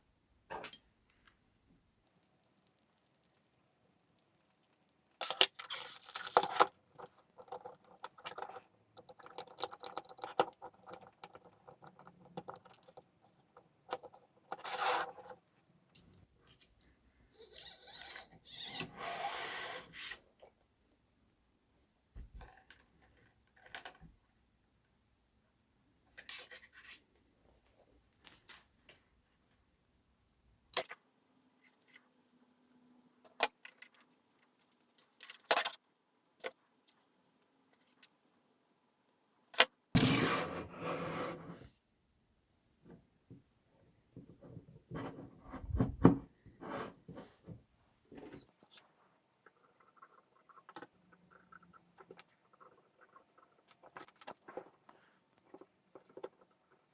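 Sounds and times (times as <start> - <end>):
small parts clicking and rattling: 2.0 - 15.4, 33.2 - 35.8
scraping on workbench: 40.0 - 41.7.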